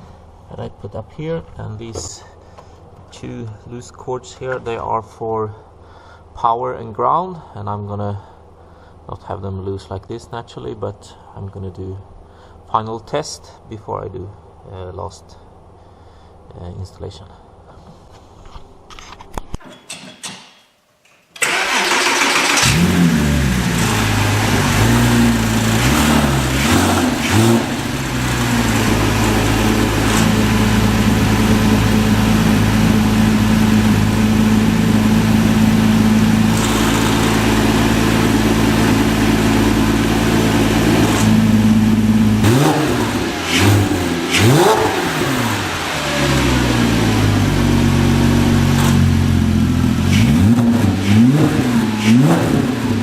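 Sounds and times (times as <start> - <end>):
sports car engine idling and revving: 22.5 - 53.0.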